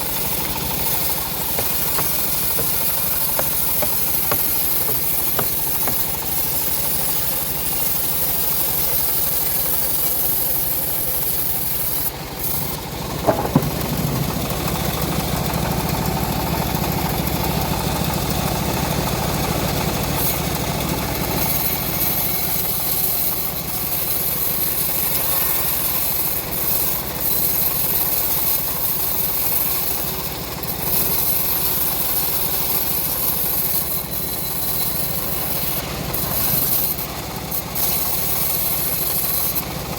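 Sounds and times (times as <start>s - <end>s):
bandsaw mill sawing log: 0.0s - 39.9s
sharp knock: 1.5s - 6.2s, 13.2s - 14.8s.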